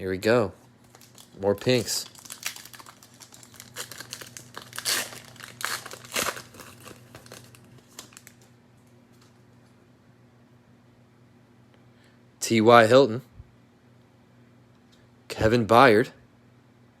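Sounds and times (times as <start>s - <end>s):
cellophane wrapper tearing and crinkling: 0.8s - 8.5s.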